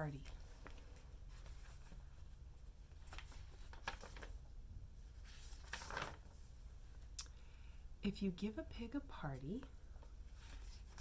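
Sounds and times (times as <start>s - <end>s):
low steady hum: 0.0s - 11.0s
page rustling: 0.2s - 6.6s, 10.0s - 11.0s.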